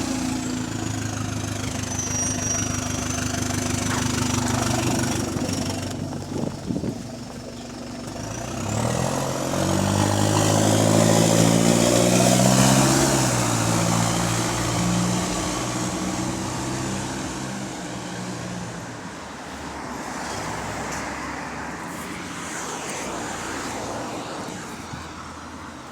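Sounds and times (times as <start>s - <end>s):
bus engine running loud: 0.0s - 25.9s
low traffic hum: 0.0s - 25.9s.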